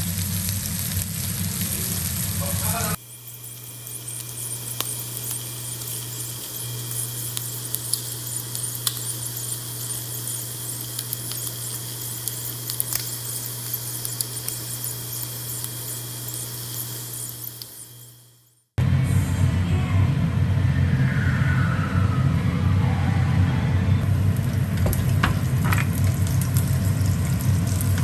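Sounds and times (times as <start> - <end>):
small crackles and pops: 0.0 - 17.9
food sizzling in hot oil: 0.0 - 18.7, 24.0 - 28.0.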